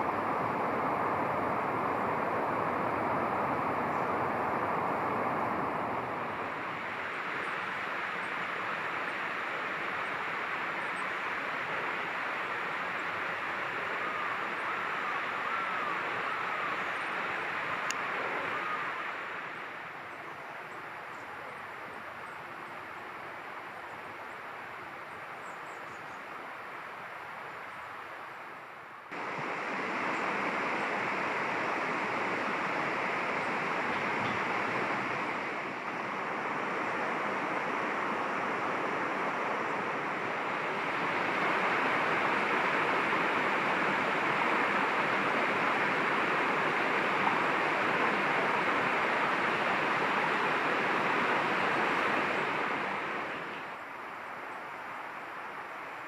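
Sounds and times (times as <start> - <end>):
flowing water rushing: 0.0 - 25.4, 26.2 - 56.0.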